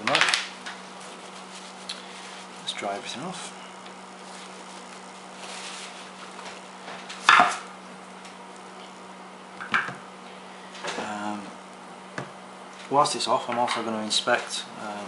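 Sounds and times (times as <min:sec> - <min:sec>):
soft wiping rustle: 0:00.8 - 0:06.7.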